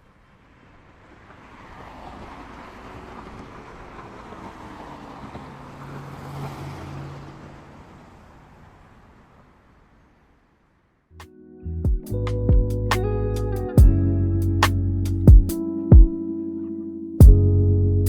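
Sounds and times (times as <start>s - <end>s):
vehicle passing by: 0.0s - 10.4s.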